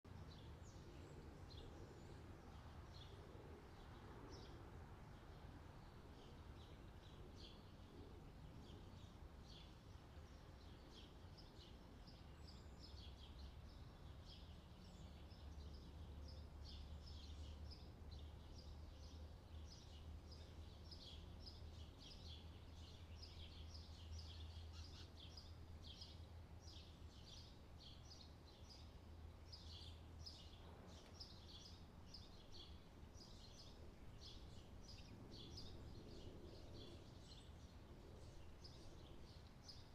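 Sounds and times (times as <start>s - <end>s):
small birds chirping: 0.1s - 39.9s.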